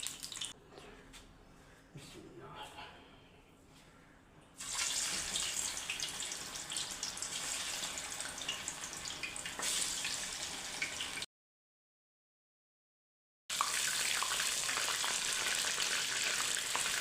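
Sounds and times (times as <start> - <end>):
fish frying in hot oil: 0.0 - 0.5, 4.6 - 11.2, 13.5 - 17.0.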